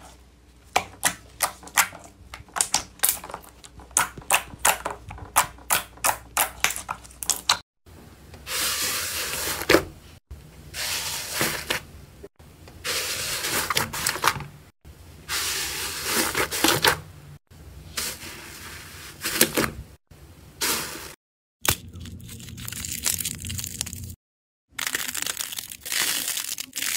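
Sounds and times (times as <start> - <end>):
slime crackling and squishing: 22.1 - 26.9.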